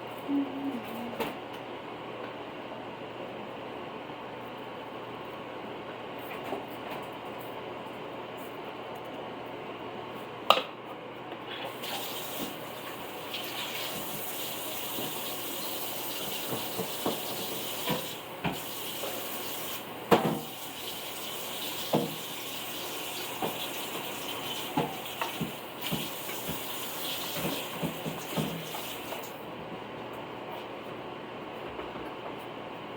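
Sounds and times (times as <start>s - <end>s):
water running from tap: 11.7s - 29.4s.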